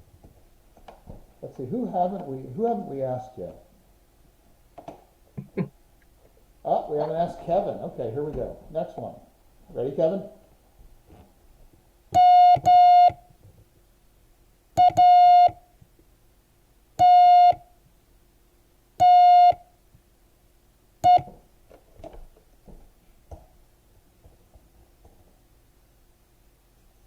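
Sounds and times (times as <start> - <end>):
morse code beeps: 12.2 - 13.2, 14.8 - 15.6, 17.0 - 17.6, 19.0 - 19.6, 21.0 - 21.3.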